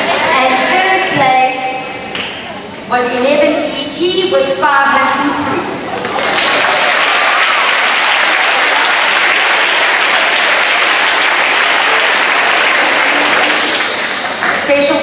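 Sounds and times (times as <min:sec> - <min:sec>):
audience applauding: 0:05.9 - 0:14.8.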